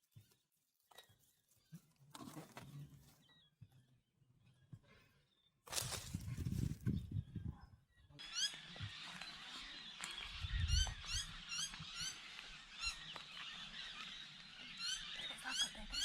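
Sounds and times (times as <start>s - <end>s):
squeaky bird calls: 8.2s - 16.0s.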